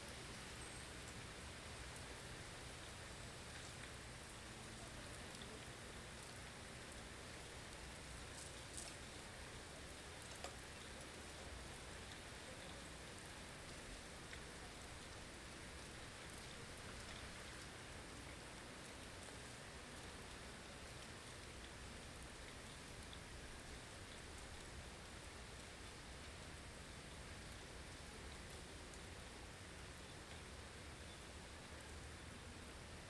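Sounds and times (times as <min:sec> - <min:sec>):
faint ticks: 0:08.4 - 0:09.2, 0:10.2 - 0:15.2.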